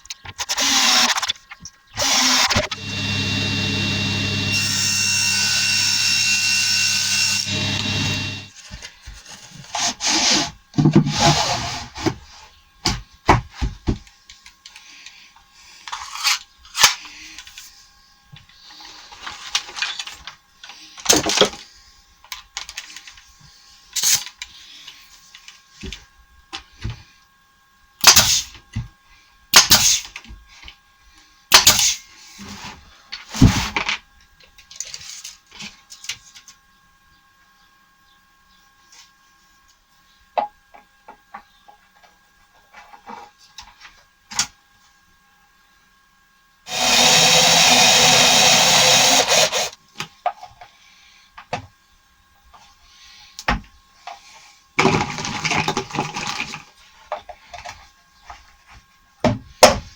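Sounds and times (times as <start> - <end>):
power saw cutting wood: 0.5 - 1.2, 2.0 - 8.5, 46.7 - 49.8.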